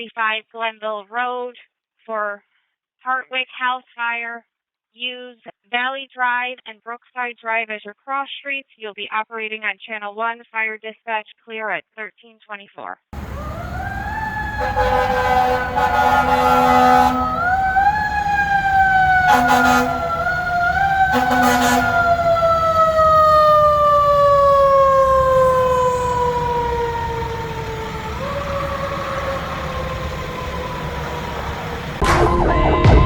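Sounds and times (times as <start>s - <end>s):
horn blasts: 13.2s - 32.1s
mechanical siren wailing: 13.2s - 33.0s.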